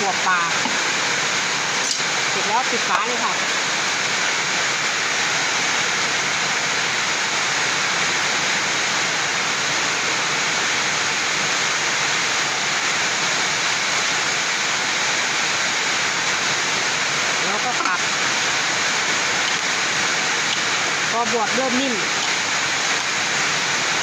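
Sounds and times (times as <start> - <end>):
heavy rain pouring: 0.0 - 24.0.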